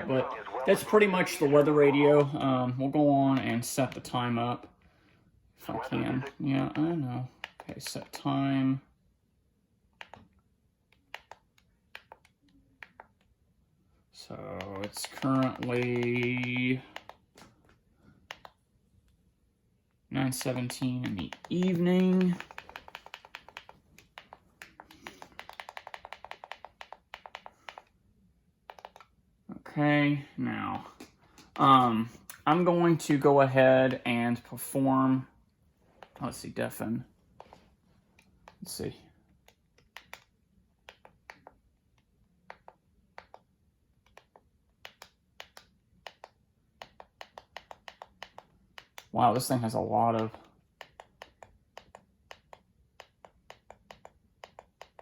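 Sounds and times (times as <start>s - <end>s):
radio buttons clicking: 20.4s - 27.9s.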